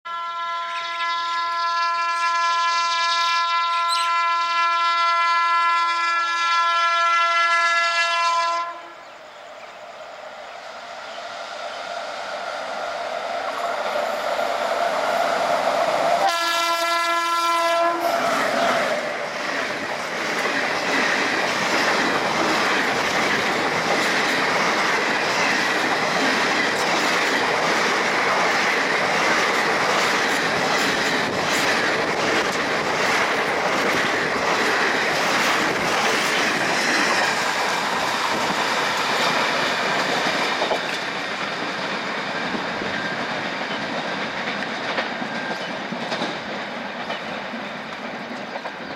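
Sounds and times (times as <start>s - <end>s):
train wheels clattering over joints: 18.1s - 48.9s.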